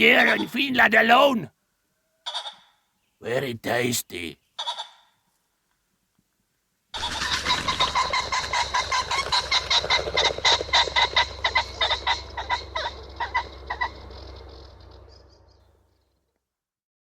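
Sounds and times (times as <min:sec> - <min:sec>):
pheasant calling: 0:00.0 - 0:01.2, 0:02.2 - 0:03.2, 0:04.4 - 0:05.2, 0:07.0 - 0:15.5
steady low hum: 0:07.9 - 0:15.8.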